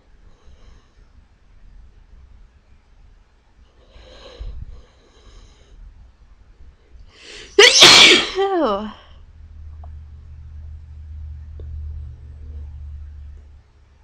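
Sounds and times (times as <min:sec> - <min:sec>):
breathy inhales: 0:07.1 - 0:07.6
person sneezing: 0:07.3 - 0:08.8.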